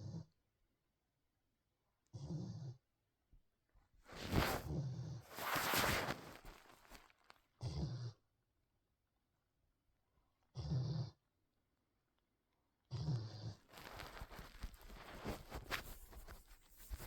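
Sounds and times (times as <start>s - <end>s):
animal snoring: 2.1s - 2.8s, 10.5s - 11.2s, 12.9s - 14.0s.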